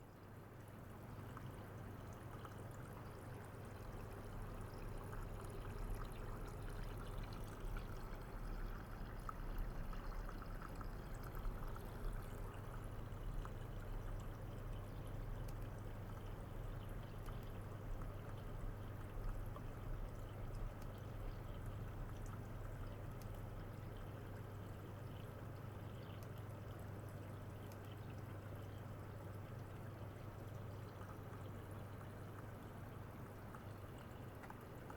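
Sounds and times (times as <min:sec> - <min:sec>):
steady low hum: 0:00.0 - 0:34.9
running water flowing: 0:01.1 - 0:20.6.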